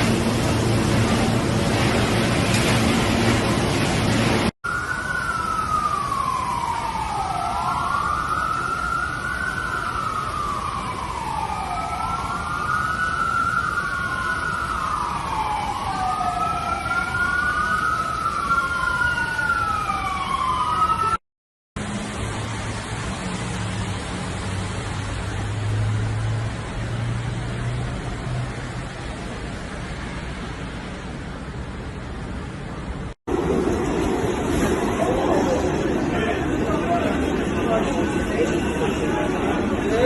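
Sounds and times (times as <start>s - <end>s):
emergency sirens wailing: 0.0s - 21.2s, 33.3s - 40.0s
rain hiss: 21.8s - 39.3s.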